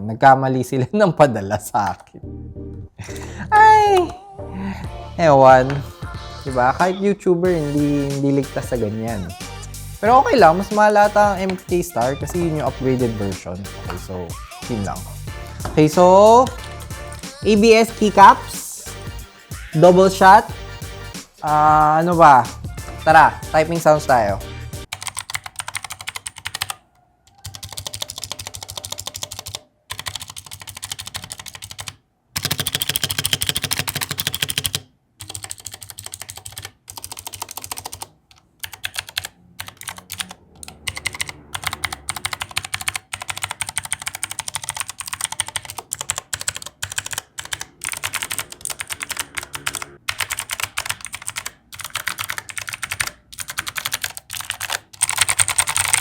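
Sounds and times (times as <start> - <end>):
mechanical keyboard typing: 10.0 - 14.9, 24.9 - 56.0.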